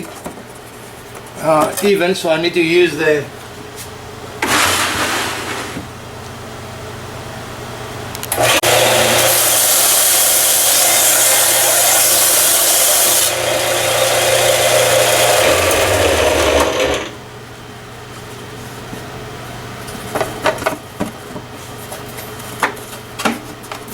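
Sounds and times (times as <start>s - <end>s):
power tool grinding wood: 8.3s - 17.2s.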